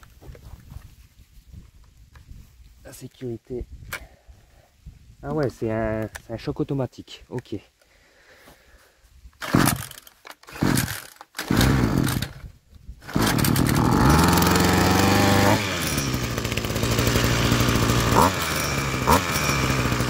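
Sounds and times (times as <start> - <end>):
pull-starter cord pulls: 9.4 - 20.0
two-stroke engine running: 9.5 - 10.0, 10.6 - 12.4, 13.0 - 20.0.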